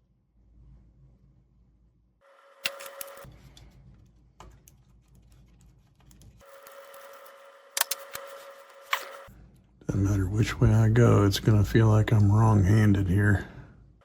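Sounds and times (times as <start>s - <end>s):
faint high whine: 6.4s - 10.6s.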